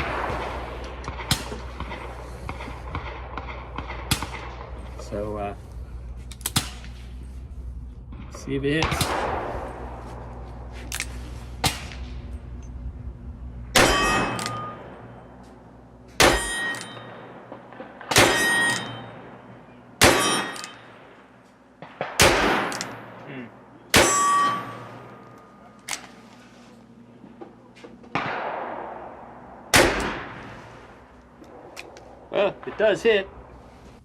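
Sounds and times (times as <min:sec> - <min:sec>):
steel target ringing: 0:11.5 - 0:21.4, 0:22.0 - 0:26.1.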